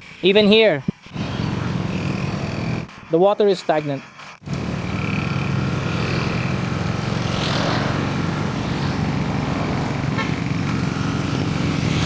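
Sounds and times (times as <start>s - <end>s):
vehicle engine running steadily: 1.1s - 2.9s, 4.4s - 12.0s.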